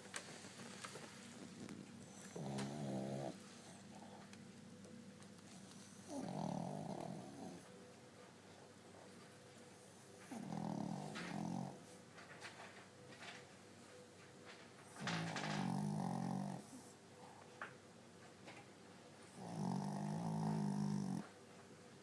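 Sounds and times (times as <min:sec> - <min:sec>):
person snoring: 0:02.2 - 0:03.4, 0:19.4 - 0:21.2.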